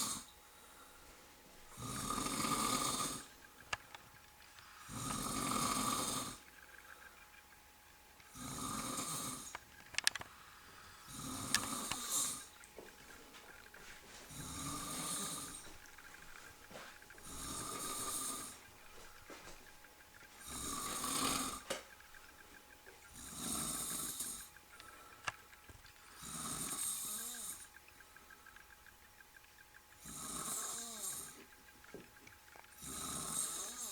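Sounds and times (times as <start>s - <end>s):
man snoring: 0.0s - 0.3s, 1.8s - 3.3s, 4.8s - 6.4s, 8.4s - 9.5s, 11.0s - 12.5s, 14.3s - 15.7s, 17.2s - 18.6s, 20.4s - 21.7s, 23.1s - 24.5s, 26.2s - 27.6s, 30.0s - 31.4s, 32.8s - 33.9s.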